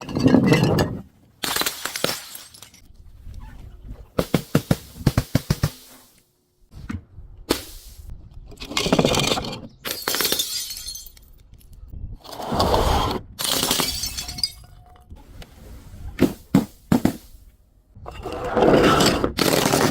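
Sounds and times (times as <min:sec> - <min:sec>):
glass bottles shattering: 0:00.0 - 0:02.8, 0:08.8 - 0:11.4, 0:13.4 - 0:15.1.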